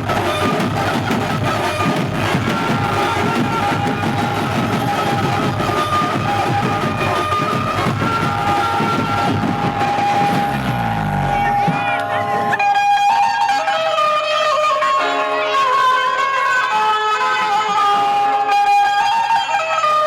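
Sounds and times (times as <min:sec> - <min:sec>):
fast dense drumming: 0:00.0 - 0:12.5
sustained melody line: 0:00.0 - 0:19.8.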